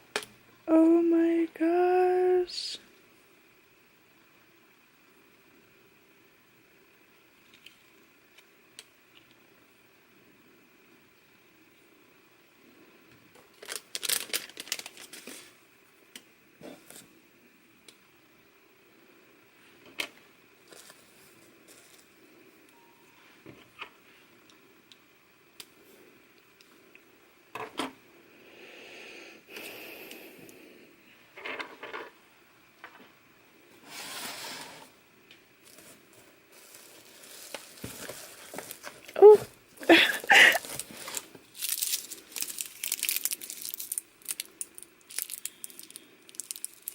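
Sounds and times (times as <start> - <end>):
packaging crinkling and rustling: 13.4 - 15.6, 20.6 - 22.2, 35.6 - 46.9.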